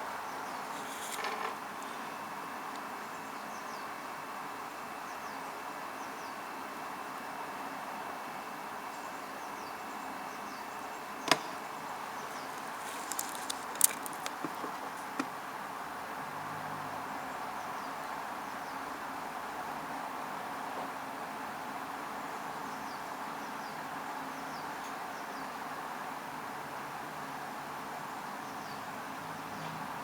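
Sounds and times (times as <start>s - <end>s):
steady background hiss: 0.0s - 30.0s
sharp clicks: 12.4s - 15.3s.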